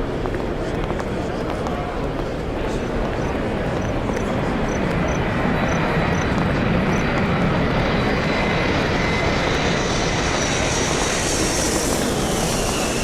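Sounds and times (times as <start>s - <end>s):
aircraft engines running: 0.0s - 13.0s
high engine whine: 2.6s - 13.0s.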